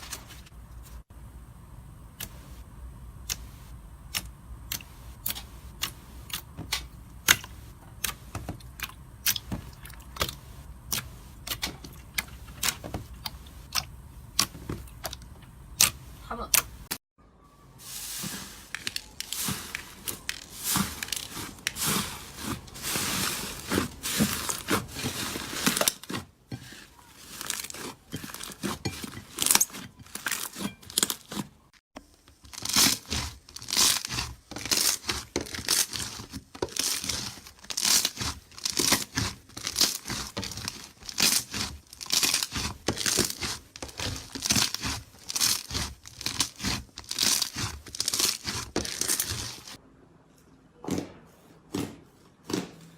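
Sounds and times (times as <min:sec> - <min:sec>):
slime crackling and popping: 0:32.2 - 0:49.8.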